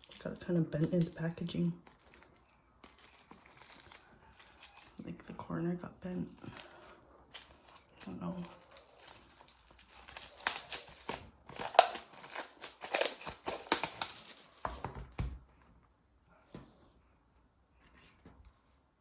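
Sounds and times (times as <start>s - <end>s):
packaging crinkling and rustling: 0.0s - 5.2s, 6.2s - 14.9s.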